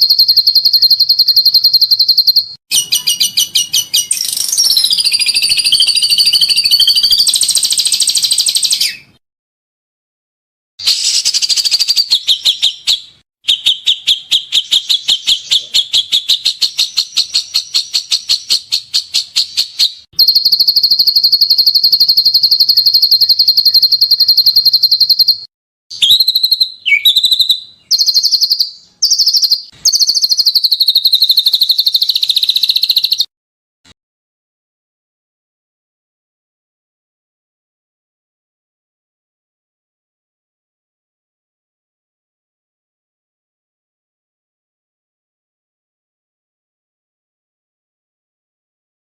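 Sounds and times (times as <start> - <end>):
songbird chattering and trilling: 0.0 - 9.2, 10.8 - 33.3.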